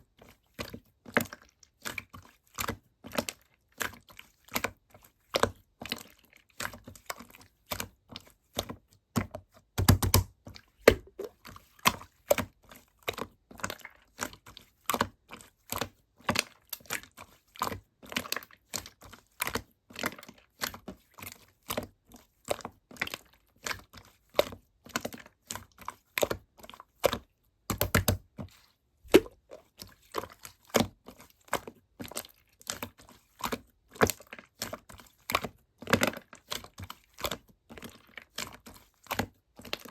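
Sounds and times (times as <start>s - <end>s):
slime squished by hand: 8.6s - 20.8s, 22.5s - 39.9s
slime crackling: 29.1s - 30.7s.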